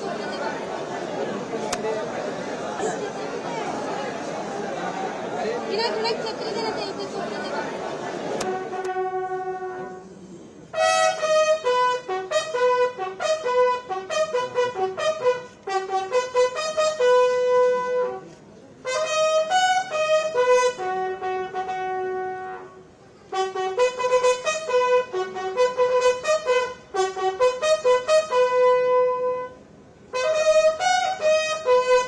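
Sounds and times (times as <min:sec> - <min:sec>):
solo trumpet melody: 0:08.4 - 0:10.1, 0:10.7 - 0:32.0.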